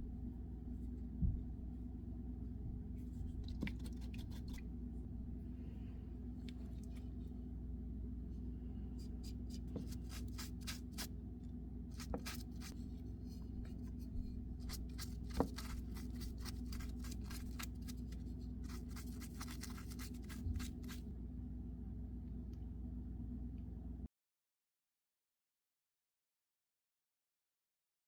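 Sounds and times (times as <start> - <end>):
steady low hum: 0.0 - 24.1
knife scraping and slicing wood: 9.2 - 11.1, 12.0 - 12.8, 14.6 - 21.0.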